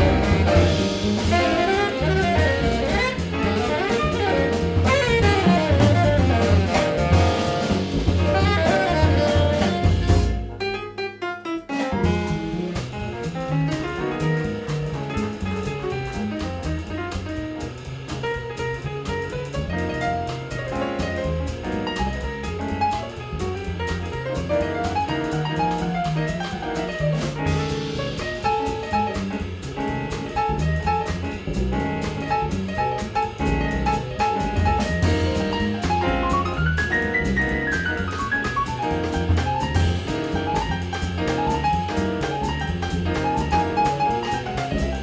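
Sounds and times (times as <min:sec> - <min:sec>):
double bass line: 0:00.0 - 0:10.9, 0:11.7 - 0:45.0
piano runs: 0:00.0 - 0:13.8
jazz band playing: 0:00.0 - 0:45.0.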